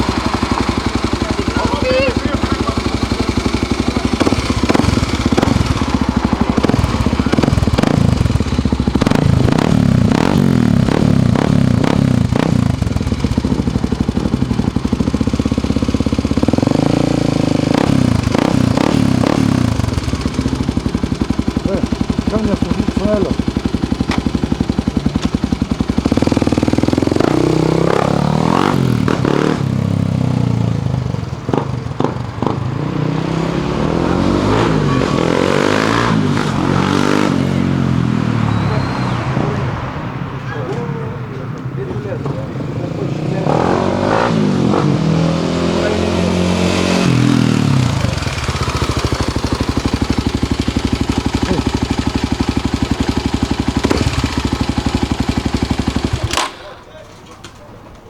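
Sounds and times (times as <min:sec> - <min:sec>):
motorcycle engine revving: 0:00.0 - 0:58.0
sharp clicks: 0:56.2 - 0:56.7.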